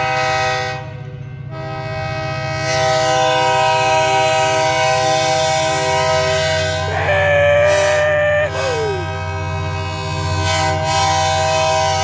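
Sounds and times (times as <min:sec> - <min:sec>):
locomotive air horn: 0:00.0 - 0:06.4.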